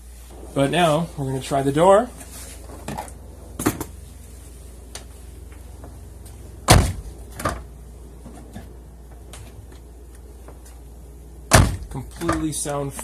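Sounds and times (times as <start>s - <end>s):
car door shutting: 6.6s - 7.7s.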